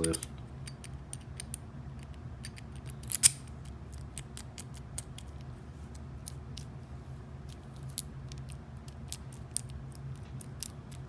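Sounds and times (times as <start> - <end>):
small metallic clicks of lock and key: 0.0 - 5.3.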